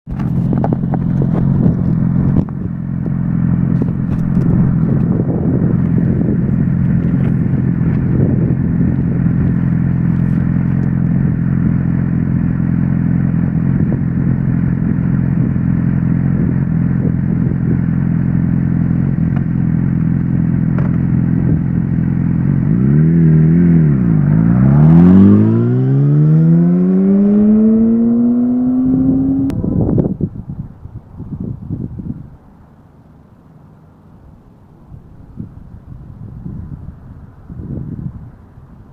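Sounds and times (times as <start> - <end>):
motorcycle engine revving: 0.1 - 30.2.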